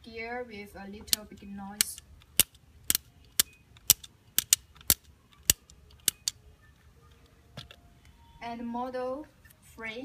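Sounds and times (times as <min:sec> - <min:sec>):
plastic gear wheels clicking: 0:01.8 - 0:06.4.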